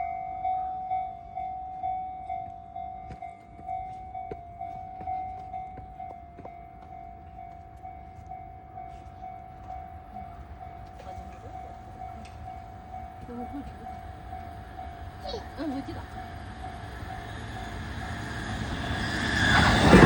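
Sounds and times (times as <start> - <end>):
electric train rumbling past: 0.0 - 20.0
level crossing warning bell: 0.0 - 20.0.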